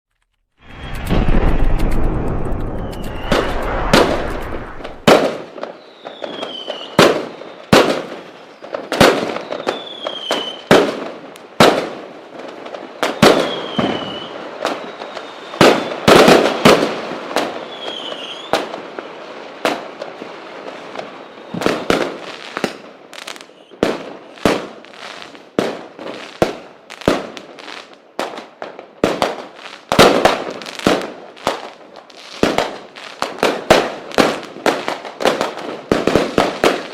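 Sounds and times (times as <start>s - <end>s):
fireworks crackle: 0.2s - 36.9s
low rumble: 0.6s - 5.1s
fireworks bangs: 0.6s - 27.5s, 28.2s - 36.9s
falling whistles: 2.7s - 5.1s, 13.2s - 16.1s.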